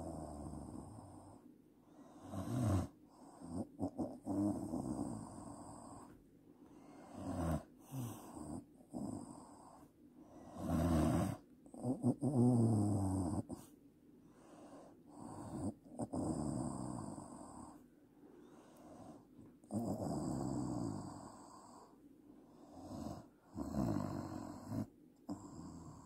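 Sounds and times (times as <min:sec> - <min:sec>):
woman snoring heavily: 0:02.0 - 0:06.1, 0:07.0 - 0:09.8, 0:10.5 - 0:13.6, 0:15.2 - 0:17.8, 0:19.7 - 0:21.9, 0:22.7 - 0:26.0.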